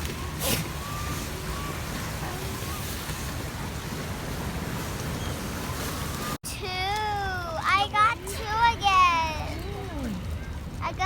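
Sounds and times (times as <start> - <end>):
faint distant voices: 0.0 - 6.4
sea surf rushing: 0.0 - 6.4
wind: 0.0 - 11.0.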